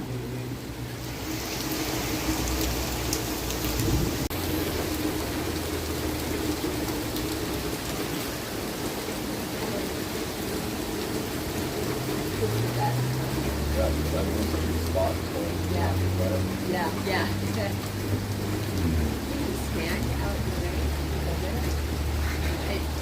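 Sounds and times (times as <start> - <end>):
heavy rain pouring: 0.0 - 23.0
low rumble of thunder: 3.6 - 6.0.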